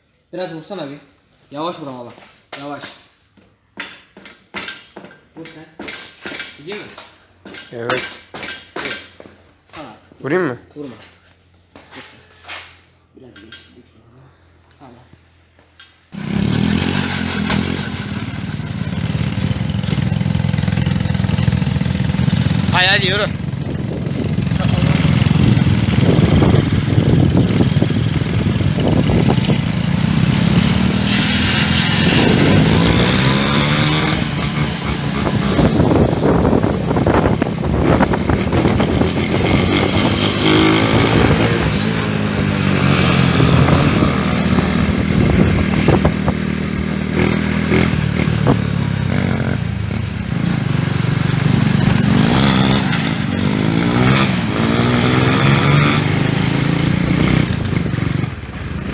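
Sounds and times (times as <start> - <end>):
motorcycle engine revving: 16.1 - 58.9.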